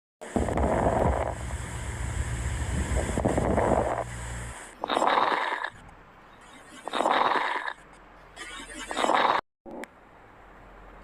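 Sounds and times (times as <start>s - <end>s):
low steady rumble: 0.4s - 4.8s.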